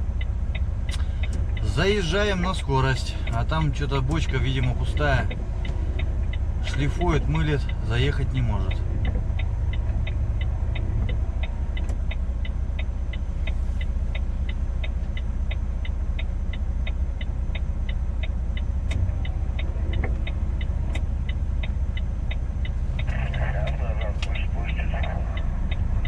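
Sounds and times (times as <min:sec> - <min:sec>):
even ticking: 0:00.0 - 0:26.0
truck engine droning: 0:00.0 - 0:26.0.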